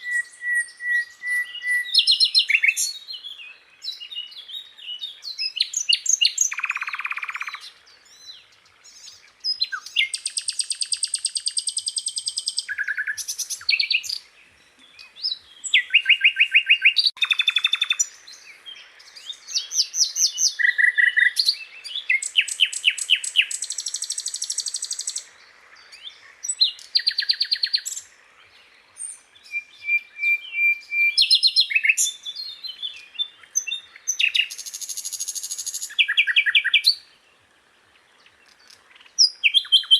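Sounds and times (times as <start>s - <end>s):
flycatcher singing: 0.0s - 8.2s, 8.8s - 14.3s, 14.9s - 25.3s.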